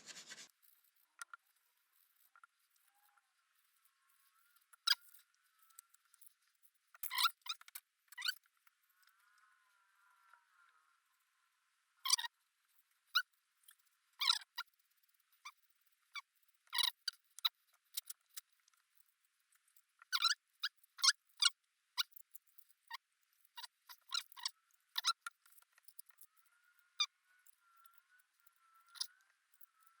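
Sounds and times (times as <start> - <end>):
abrasive paper scraping metal: 0.0 - 0.5.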